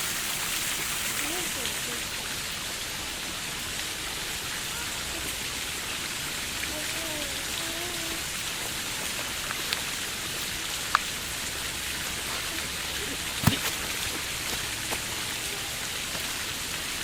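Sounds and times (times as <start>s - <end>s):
splashing water hiss: 0.0s - 17.0s.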